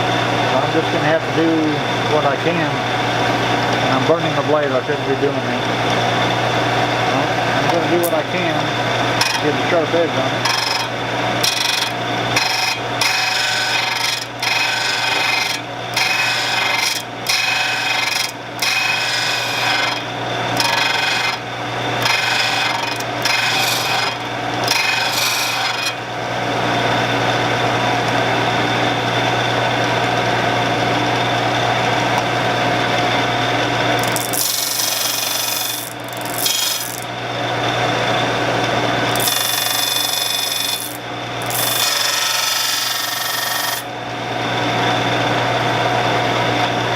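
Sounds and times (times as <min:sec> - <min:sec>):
motor running: 0:00.0 - 0:46.8
blade grinding on wheel: 0:10.4 - 0:21.4, 0:22.0 - 0:26.0, 0:34.0 - 0:37.1, 0:39.0 - 0:43.9.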